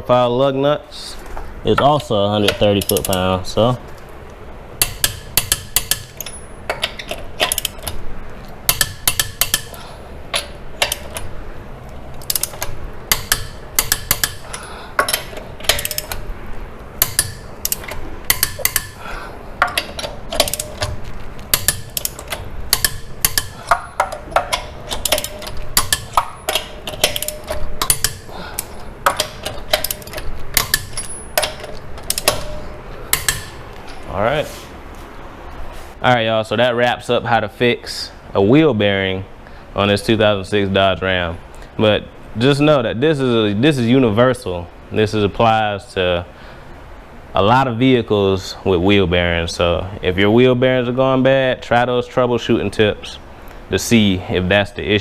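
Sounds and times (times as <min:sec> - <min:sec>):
torque wrench ratcheting clicks: 0:08.7 - 0:09.8, 0:12.2 - 0:16.2, 0:17.0 - 0:19.0, 0:19.6 - 0:32.4.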